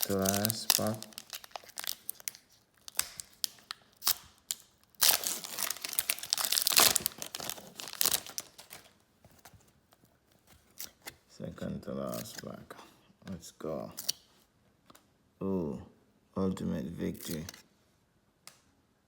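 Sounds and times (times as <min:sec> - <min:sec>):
wrapper crinkling and ripping: 0:00.0 - 0:09.0.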